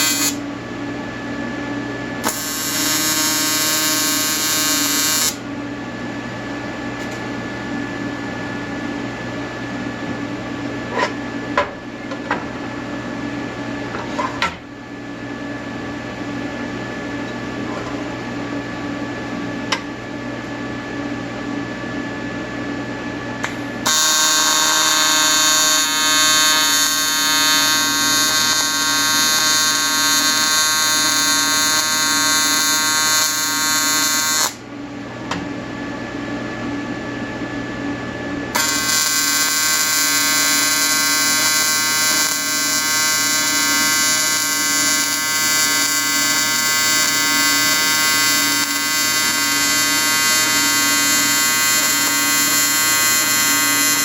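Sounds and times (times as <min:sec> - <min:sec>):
welding arc buzzing: 0:00.0 - 0:00.5, 0:02.2 - 0:05.4, 0:23.4 - 0:34.6, 0:38.5 - 0:54.0
welder humming: 0:00.0 - 0:05.5, 0:23.4 - 0:34.7, 0:38.4 - 0:54.0.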